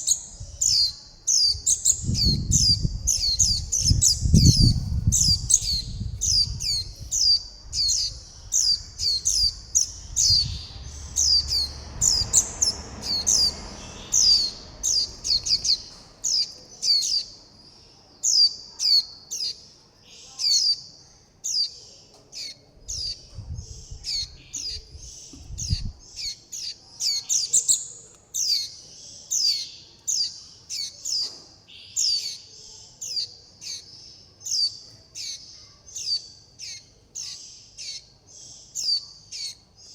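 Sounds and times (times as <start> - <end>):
young birds high begging calls: 0.0 - 17.4, 22.4 - 31.2
faint low rumble: 1.9 - 16.4.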